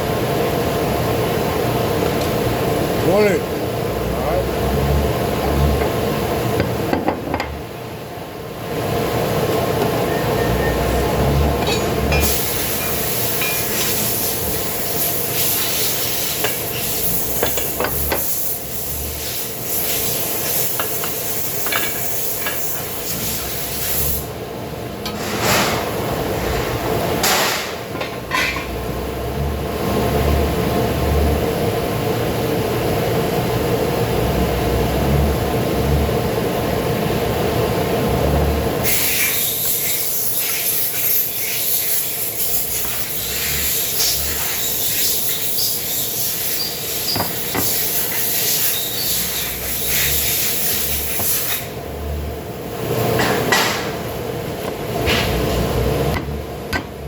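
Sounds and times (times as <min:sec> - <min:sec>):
loud hissing spray: 0:12.2 - 0:24.3, 0:38.9 - 0:51.8.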